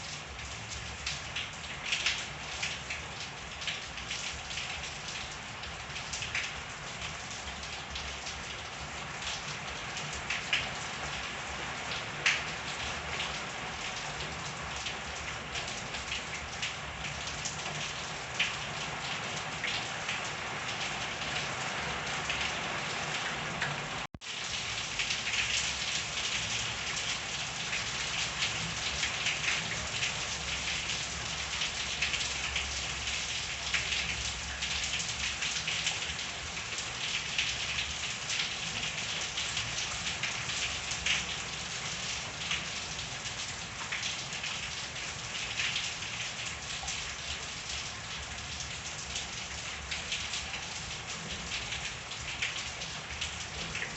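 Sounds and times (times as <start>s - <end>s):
rain drops pattering: 0.0s - 53.9s.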